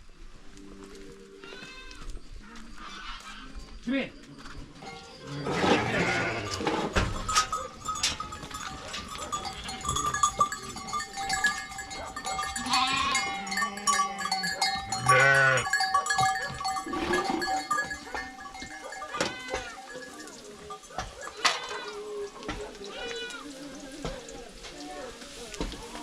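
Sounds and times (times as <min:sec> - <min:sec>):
sheep and goats bleating: 0:01.3 - 0:03.7, 0:05.2 - 0:26.0.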